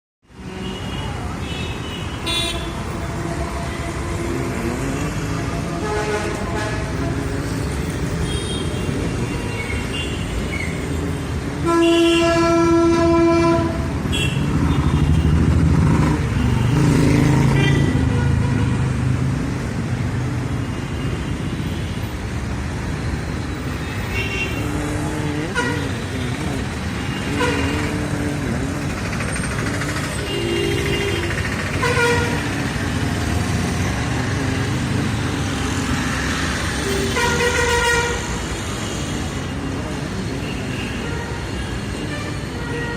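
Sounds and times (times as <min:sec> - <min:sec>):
traffic engine and tyre noise: 0:00.2 - 0:42.9
long loud horn blast: 0:02.3 - 0:07.4, 0:11.6 - 0:14.6, 0:24.1 - 0:28.7, 0:30.2 - 0:32.4, 0:36.8 - 0:39.5.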